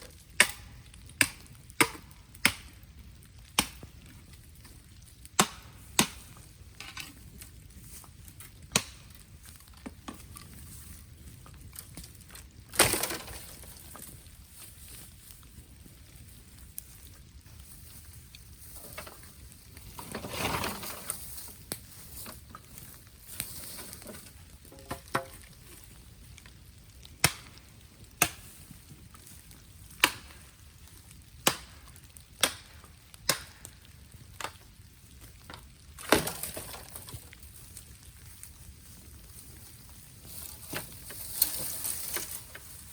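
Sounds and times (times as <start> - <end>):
bamboo cracking in fire: 0.0 - 42.9
bamboo fire sizzling hiss: 0.0 - 42.9.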